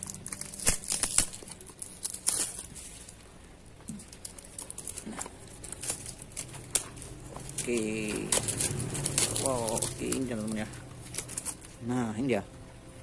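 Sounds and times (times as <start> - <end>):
box packaging scraping and crinkling: 4.0 - 11.8.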